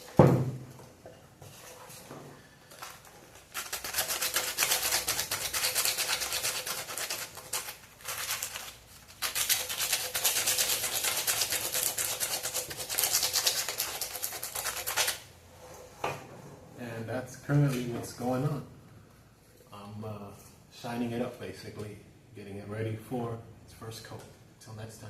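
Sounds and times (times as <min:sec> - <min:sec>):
sandpaper rubbing back and forth: 0:03.6 - 0:15.2.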